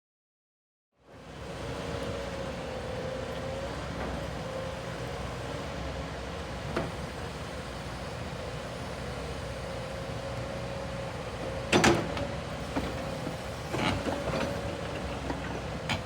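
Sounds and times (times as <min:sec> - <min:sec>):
excavator engine running: 0:06.9 - 0:16.0.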